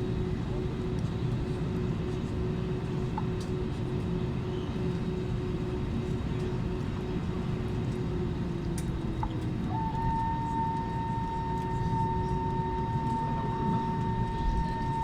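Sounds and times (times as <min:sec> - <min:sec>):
aircraft cabin rumble: 0:04.8 - 0:15.0
high-pitched whine: 0:09.7 - 0:15.0.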